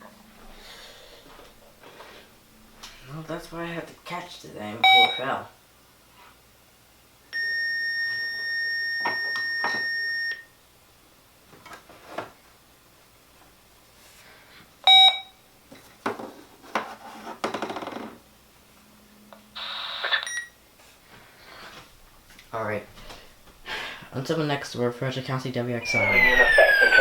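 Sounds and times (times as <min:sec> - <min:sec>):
short loud beep: 0:25.8 - 0:27.0
weather radio alarm tone: 0:25.8 - 0:27.0.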